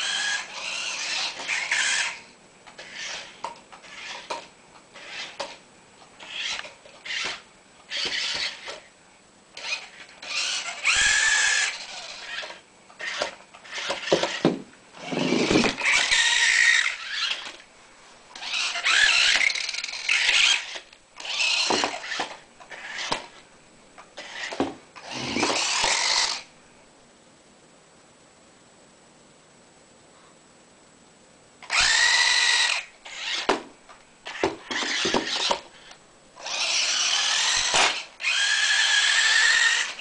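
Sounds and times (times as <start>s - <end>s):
toy car motor whirring: 0.0s - 2.2s, 2.8s - 4.4s, 5.0s - 5.6s, 6.2s - 8.8s, 9.6s - 14.4s, 15.0s - 17.6s, 18.4s - 23.4s, 24.2s - 26.5s, 31.6s - 33.5s, 34.2s - 35.6s, 36.4s - 40.0s.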